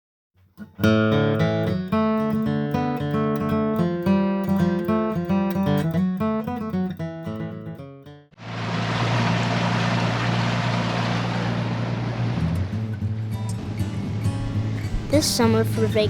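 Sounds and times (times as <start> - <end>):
strummed acoustic guitar: 0.5 - 16.0
boat motor running: 8.4 - 16.0.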